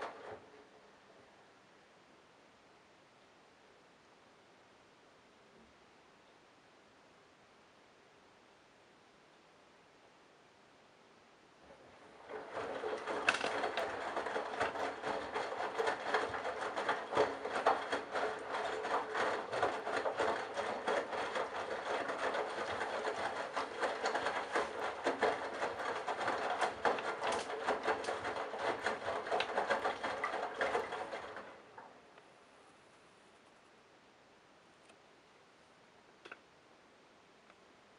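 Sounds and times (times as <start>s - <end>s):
washing machine drum tumbling: 11.9s - 31.5s.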